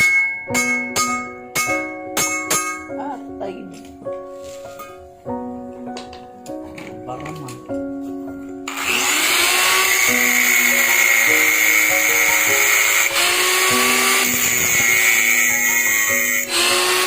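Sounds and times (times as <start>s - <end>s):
background music: 0.0s - 17.0s
power tool whining: 8.6s - 17.0s.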